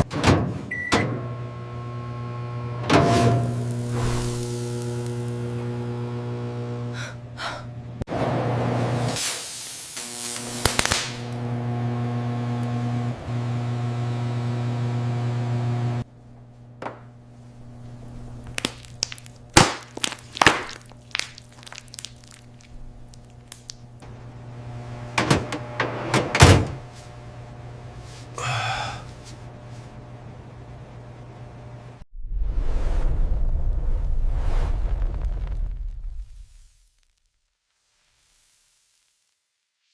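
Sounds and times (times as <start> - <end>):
microwave oven humming: 0.7 - 9.1, 10.0 - 18.6, 22.6 - 32.0.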